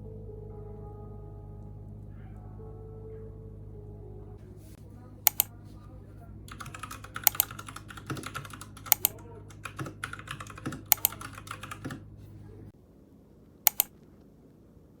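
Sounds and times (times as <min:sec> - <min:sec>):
mechanical keyboard typing: 0:05.3 - 0:05.6, 0:06.5 - 0:12.1, 0:13.7 - 0:13.9.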